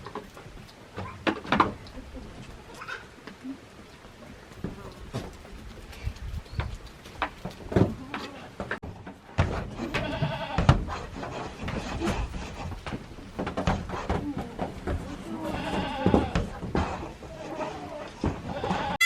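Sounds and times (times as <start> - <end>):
knocks and thumps: 0.0 - 1.9, 6.6 - 17.4, 18.2 - 18.8
goat bleating: 7.8 - 8.6, 9.8 - 10.7, 14.4 - 19.0.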